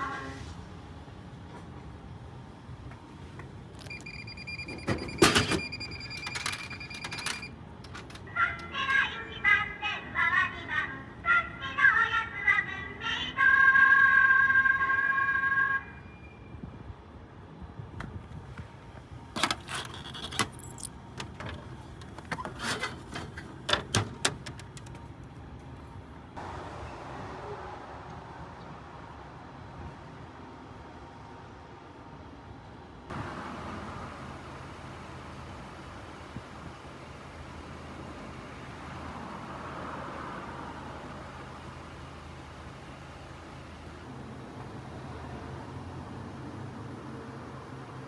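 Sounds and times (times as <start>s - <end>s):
vending machine clunk and rattle: 3.8s - 8.3s, 19.3s - 25.0s
high electronic beep tone: 3.9s - 7.5s
metallic clinks and knocks: 19.4s - 21.6s.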